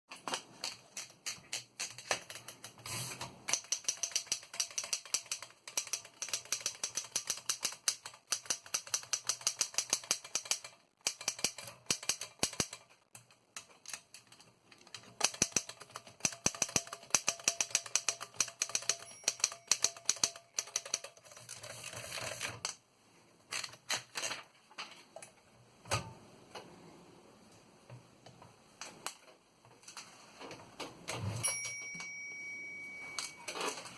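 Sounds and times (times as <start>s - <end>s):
typewriter keys clacking: 0.1s - 22.7s.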